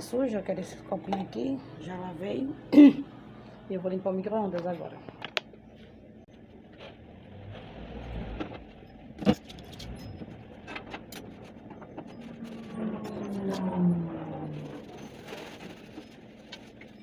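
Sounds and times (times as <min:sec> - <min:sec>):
low droning tone sliding down: 0:12.1 - 0:16.0.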